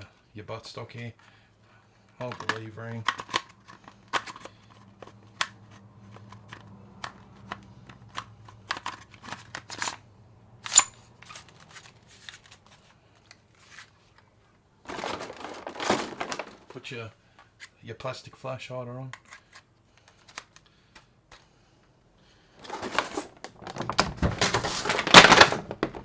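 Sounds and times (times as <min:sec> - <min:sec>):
plastic buttstock clicks and scrapes: 0:02.2 - 0:10.0, 0:19.1 - 0:21.5.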